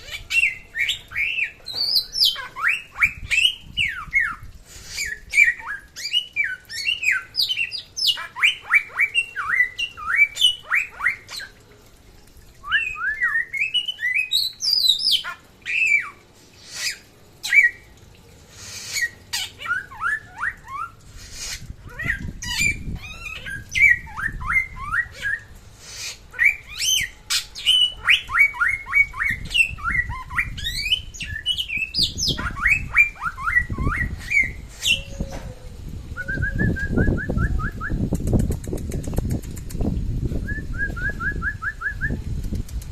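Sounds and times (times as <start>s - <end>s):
bird singing whistled notes: 12.6s - 16.0s.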